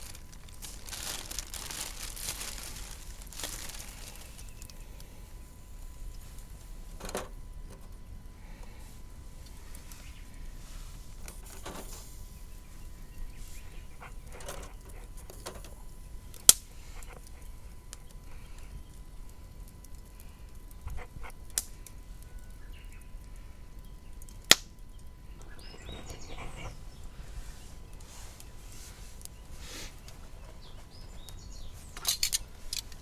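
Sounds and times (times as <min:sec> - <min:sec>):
low outdoor background noise: 0:00.0 - 0:33.0
sharp cracks: 0:24.4 - 0:24.8
faint bird calls: 0:25.2 - 0:32.5.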